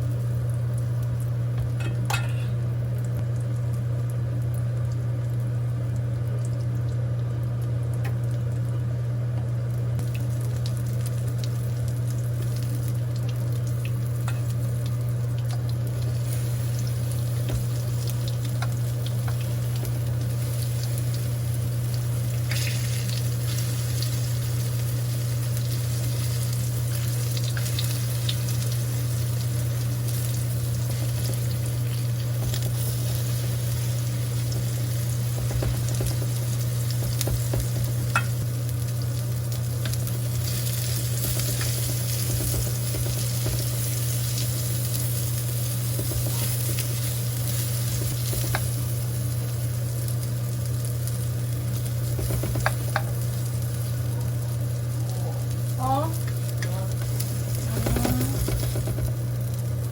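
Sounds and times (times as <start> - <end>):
steady low hum: 0.0 - 59.9
food sizzling in a pan: 10.0 - 59.9.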